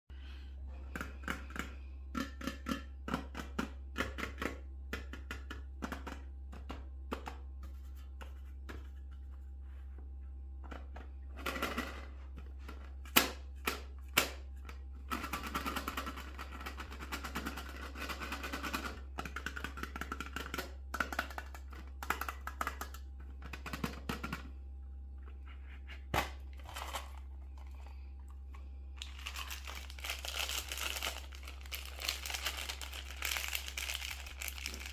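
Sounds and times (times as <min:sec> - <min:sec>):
candies rattling into metal bowl: 0:29.0 - 0:34.9.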